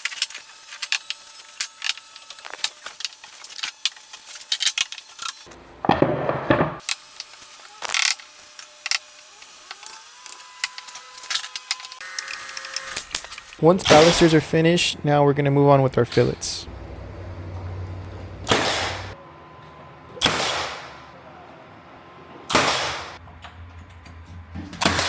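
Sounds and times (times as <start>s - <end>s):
tools knocking on wood: 5.8s - 6.8s
power tool burst: 6.8s - 14.4s, 18.5s - 19.2s.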